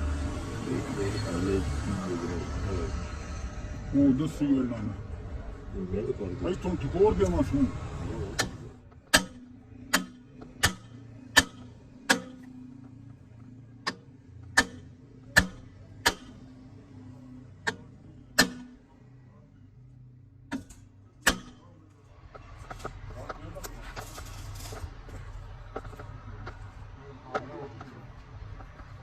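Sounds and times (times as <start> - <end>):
hammer tapping on metal: 8.4 - 13.0, 13.8 - 16.5, 17.6 - 18.8, 20.5 - 21.7.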